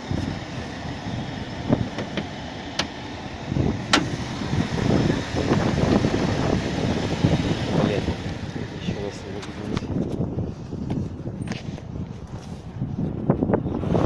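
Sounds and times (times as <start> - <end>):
car engine knocking: 0.3 - 10.2.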